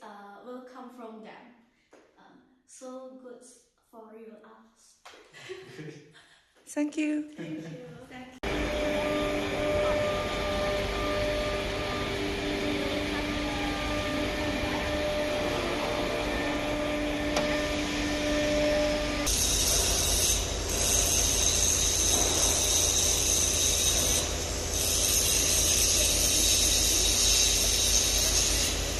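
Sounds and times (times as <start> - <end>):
high hissing machine noise: 8.4 - 28.9
machine hum with held tones: 8.4 - 28.9.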